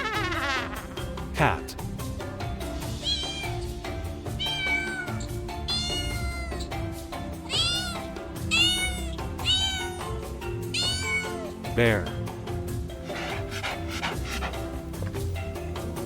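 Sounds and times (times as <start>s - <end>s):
background music: 0.0s - 16.0s
cat meowing: 3.0s - 3.7s, 4.3s - 6.7s, 7.4s - 11.6s.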